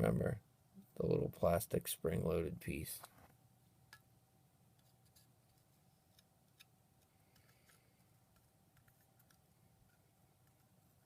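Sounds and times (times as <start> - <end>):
faint clicks of small parts: 4.8 - 10.7.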